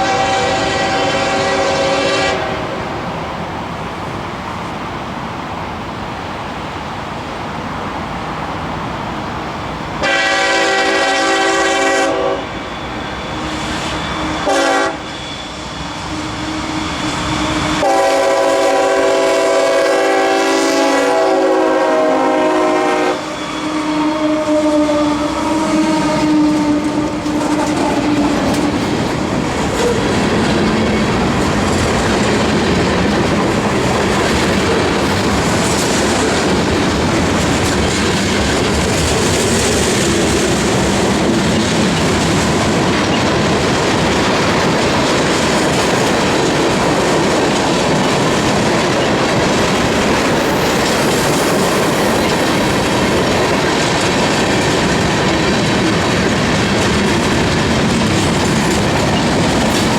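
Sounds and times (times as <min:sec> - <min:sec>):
locomotive air horn: 0:00.0 - 0:02.9, 0:10.0 - 0:12.7, 0:13.4 - 0:28.6
moving train noise: 0:00.0 - 0:59.9
wheels clattering on rails: 0:25.4 - 0:59.9.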